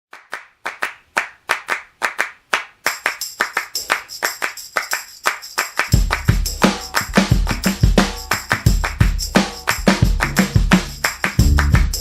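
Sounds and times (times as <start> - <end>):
rhythmic hand claps: 0.1 - 12.0
tambourine jingling: 2.8 - 12.0
low bass beat: 6.0 - 12.0.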